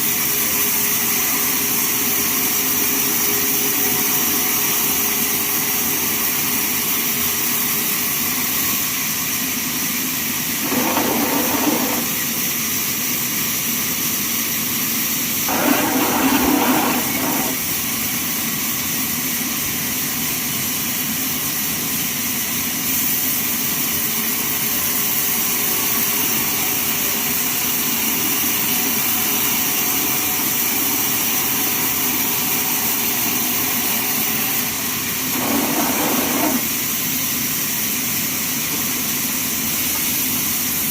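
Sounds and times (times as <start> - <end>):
band sawmill drone: 10.6 - 12.4, 15.5 - 17.7, 35.3 - 36.7.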